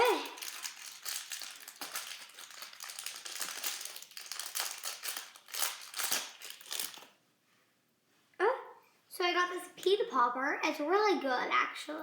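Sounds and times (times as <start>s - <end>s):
plastic packaging crinkling: 0.0s - 7.2s.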